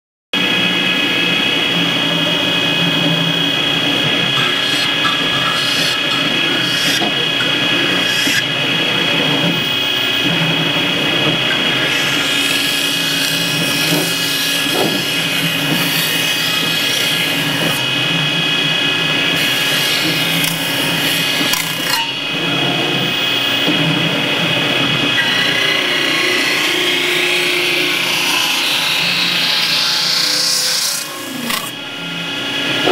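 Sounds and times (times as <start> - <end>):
lathe high-pitched whine: 0.4 - 32.9
metal rubbing noise: 2.6 - 8.4.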